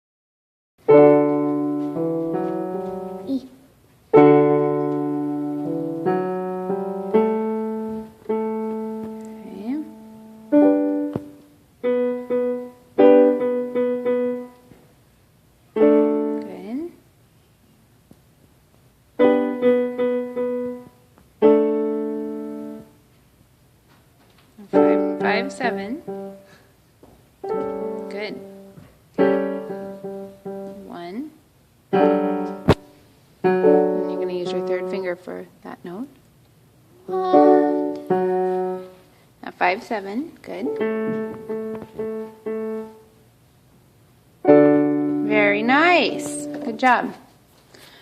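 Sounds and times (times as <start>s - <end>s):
piano playing slow chords: 0.8s - 14.8s, 15.7s - 16.8s, 19.2s - 23.0s, 24.7s - 26.7s, 27.4s - 31.0s, 31.9s - 35.5s, 37.0s - 39.2s, 40.7s - 43.3s, 44.4s - 47.1s.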